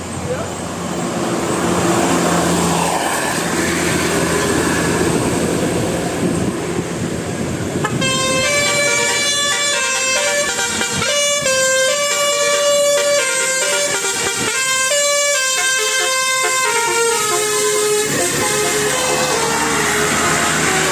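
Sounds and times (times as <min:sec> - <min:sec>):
engine and traffic noise: 0:00.0 - 0:20.9
bus horn playing a tune: 0:07.8 - 0:20.9.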